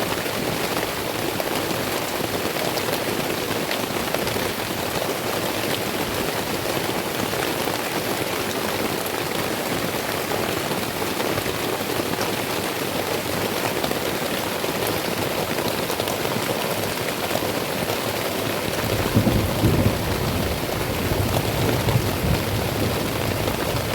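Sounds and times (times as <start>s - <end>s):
heavy rain: 0.0s - 23.9s
low rumble of thunder: 18.8s - 23.9s.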